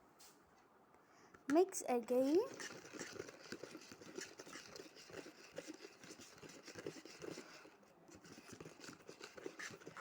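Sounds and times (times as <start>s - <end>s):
slime stirred in a bowl: 2.2s - 10.0s.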